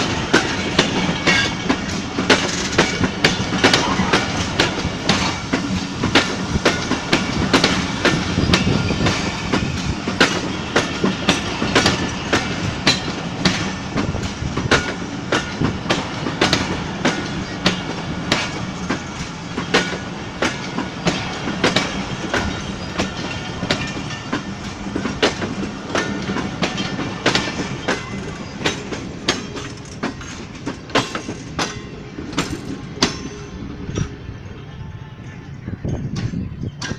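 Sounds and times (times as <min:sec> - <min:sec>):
train wheels clacking over rail joints: 0:00.0 - 0:34.3, 0:35.9 - 0:36.9
train rumble: 0:00.0 - 0:36.9.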